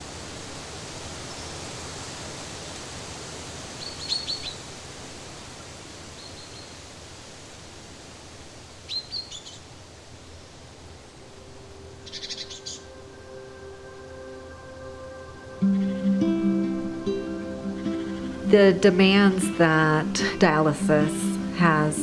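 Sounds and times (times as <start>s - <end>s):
steady background hiss: 0.0s - 22.0s
small birds chirping: 3.8s - 4.7s, 6.1s - 6.8s, 8.9s - 9.7s, 12.0s - 13.0s.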